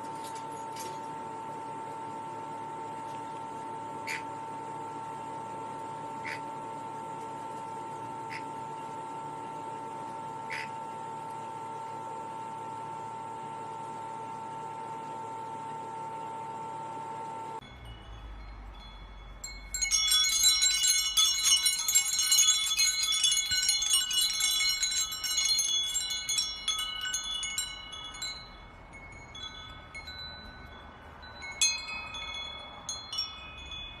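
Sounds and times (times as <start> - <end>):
chimes ringing: 17.6 - 34.0.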